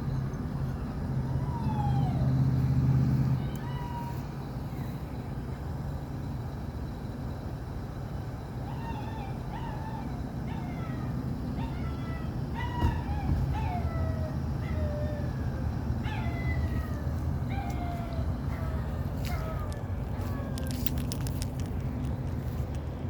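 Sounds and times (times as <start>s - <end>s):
steady low rumble: 0.0s - 23.0s
puppy whining yelps: 1.2s - 2.4s, 3.4s - 4.3s, 8.6s - 21.4s.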